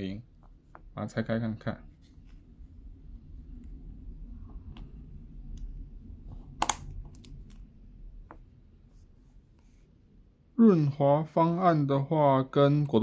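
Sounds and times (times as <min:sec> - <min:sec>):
plastic switch clicks: 0:06.6 - 0:07.2.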